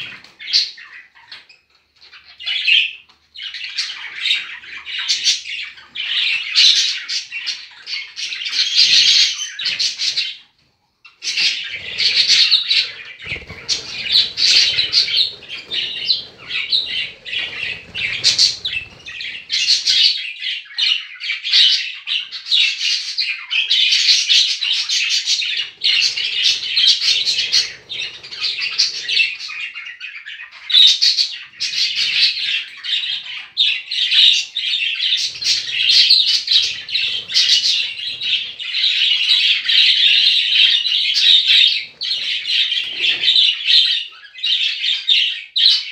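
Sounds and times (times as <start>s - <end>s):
budgerigars chattering and chirping: 11.1s - 45.9s.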